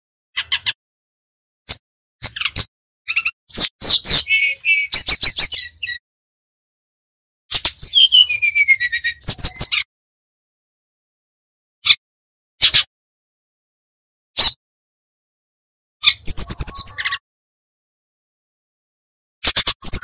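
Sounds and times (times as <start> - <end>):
bird whistling song: 1.7 - 6.0, 7.5 - 9.9, 16.0 - 17.2, 19.5 - 20.0.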